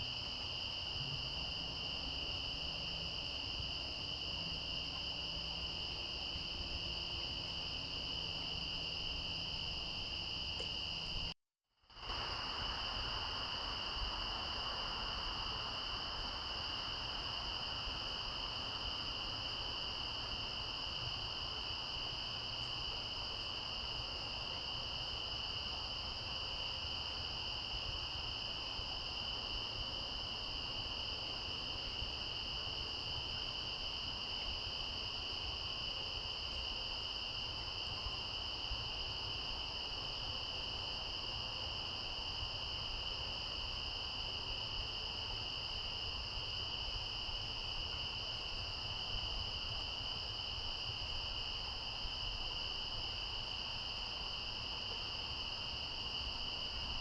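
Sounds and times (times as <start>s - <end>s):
low background hiss: 0.0s - 11.3s, 12.0s - 57.0s
high-pitched insect trill: 12.1s - 57.0s.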